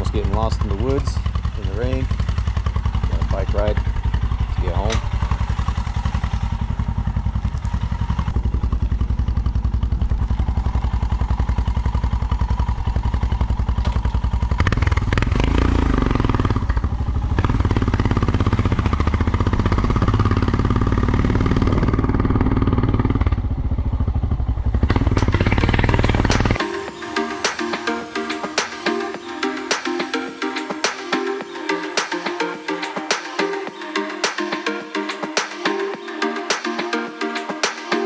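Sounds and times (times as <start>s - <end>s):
motorcycle engine running: 0.0s - 27.9s.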